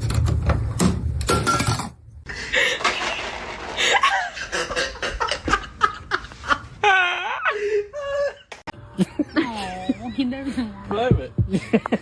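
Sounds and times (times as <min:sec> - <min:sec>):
person laughing: 0:02.3 - 0:10.2.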